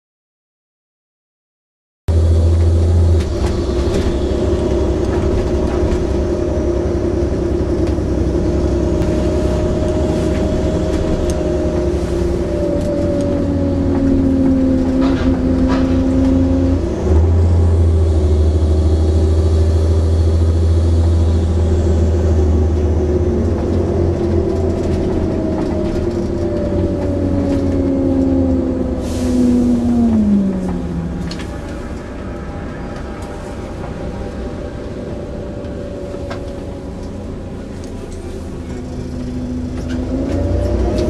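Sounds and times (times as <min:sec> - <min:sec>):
bus engine: 0:02.1 - 0:41.0
air brake hiss: 0:29.0 - 0:29.8.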